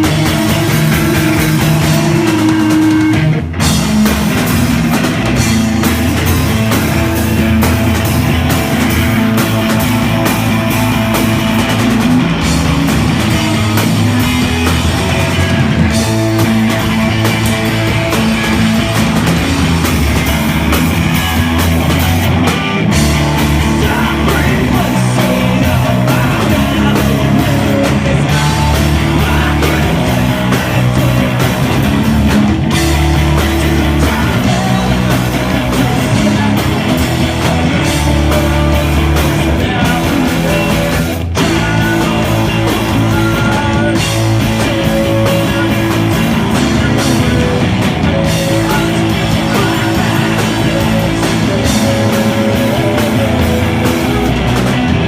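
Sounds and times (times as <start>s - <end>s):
live rock band playing: 0.0s - 55.0s.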